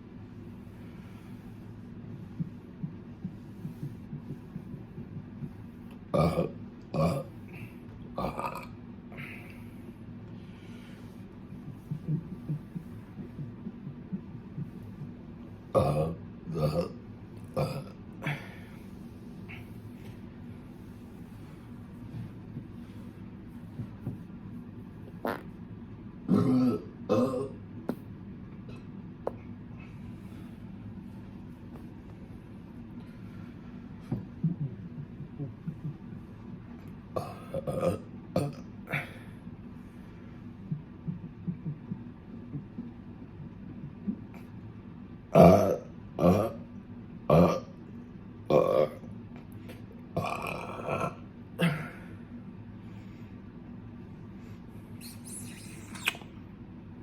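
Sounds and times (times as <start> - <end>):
low steady hum: 0.0 - 57.0
person burping: 6.1 - 7.3, 8.2 - 8.8, 15.8 - 18.0, 26.3 - 27.6, 37.2 - 38.6, 45.4 - 46.6, 47.3 - 47.7, 48.5 - 49.1, 50.2 - 52.0
person farting: 25.2 - 25.5.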